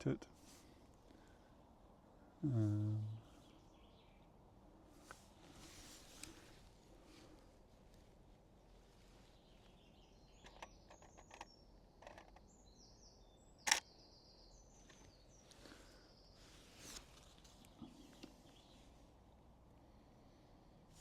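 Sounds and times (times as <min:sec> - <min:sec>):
songbirds calling: 0:00.0 - 0:07.6, 0:08.2 - 0:21.0
camera shutter click: 0:13.7 - 0:13.9.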